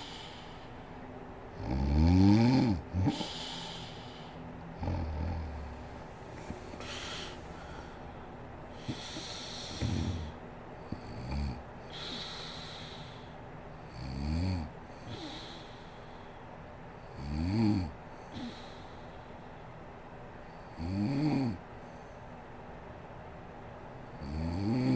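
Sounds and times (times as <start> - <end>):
woman snoring: 1.6 - 4.2, 4.8 - 6.0, 8.8 - 13.0, 13.9 - 15.6, 17.1 - 18.6, 20.7 - 21.6, 24.2 - 24.9.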